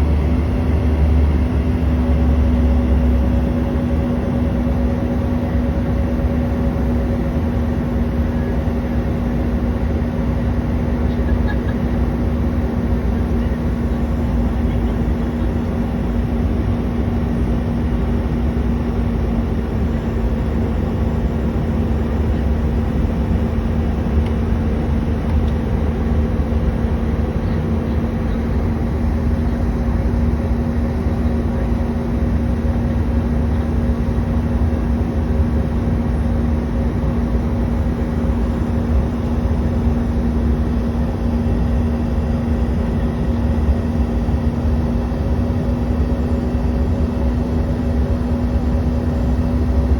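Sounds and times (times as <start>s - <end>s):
jet engines droning: 0.0s - 49.9s.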